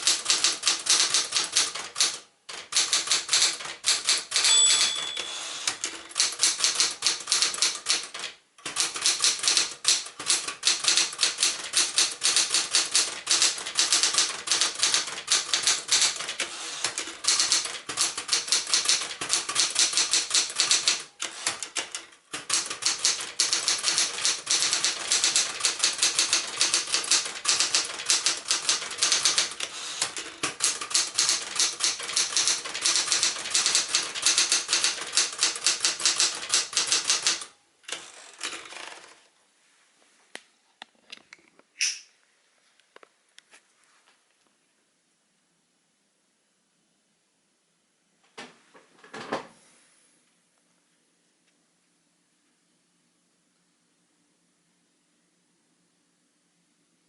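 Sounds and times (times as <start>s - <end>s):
manual typewriter typing: 0.0s - 39.2s.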